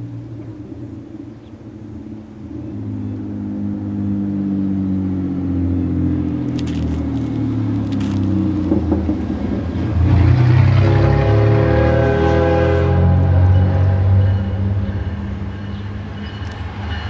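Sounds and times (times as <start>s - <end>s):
diesel locomotive engines: 0.0s - 17.0s
train air horn: 10.4s - 14.9s.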